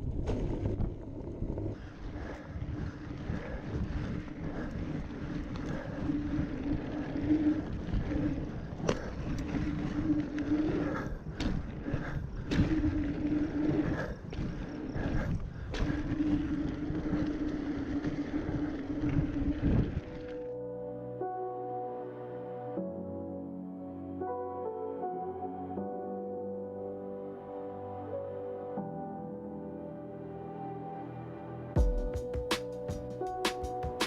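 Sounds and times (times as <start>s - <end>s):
wind noise on microphone: 0.0s - 20.5s
bike tyres rolling hum: 0.0s - 21.2s.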